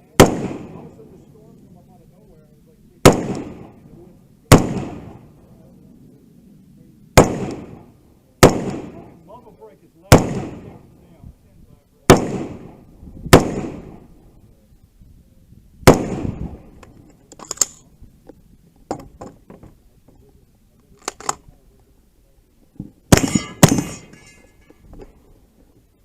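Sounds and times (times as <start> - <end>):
gunshots: 0.0 - 1.0, 3.0 - 3.8, 4.5 - 5.2, 7.2 - 9.2, 10.1 - 10.8, 12.1 - 14.1, 15.8 - 16.8, 23.1 - 24.2.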